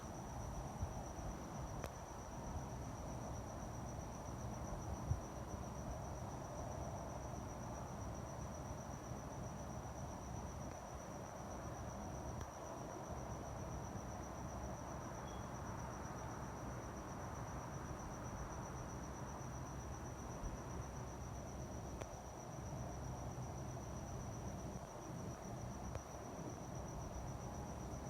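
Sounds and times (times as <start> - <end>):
low night rumble: 0.0 - 28.0
cricket trilling: 11.2 - 28.0.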